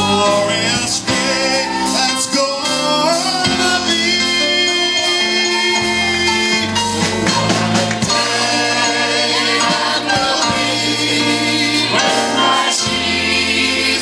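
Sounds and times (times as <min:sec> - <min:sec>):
gospel band playing: 0:00.0 - 0:14.0
people singing chorus: 0:03.6 - 0:14.0.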